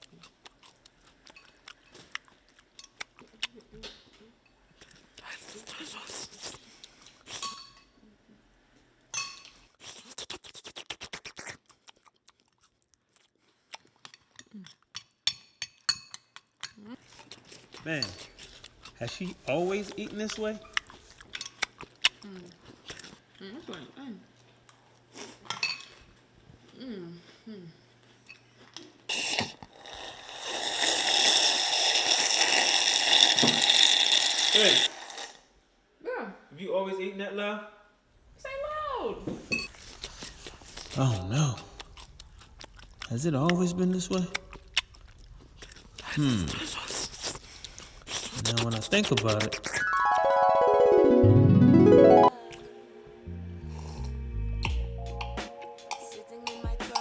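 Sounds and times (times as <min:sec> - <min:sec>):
person eating noisily: 0:00.0 - 0:07.6, 0:09.7 - 0:15.2, 0:16.8 - 0:23.4, 0:27.3 - 0:35.4, 0:39.7 - 0:50.3, 0:53.6 - 0:54.8, 0:55.9 - 0:57.0
cutlery clinking against bowl: 0:07.3 - 0:07.9, 0:09.1 - 0:09.6, 0:14.1 - 0:16.8, 0:17.9 - 0:19.4, 0:25.5 - 0:26.0
person slurping: 0:09.8 - 0:12.1, 0:29.1 - 0:35.4, 0:45.6 - 0:50.0, 0:53.6 - 0:54.8.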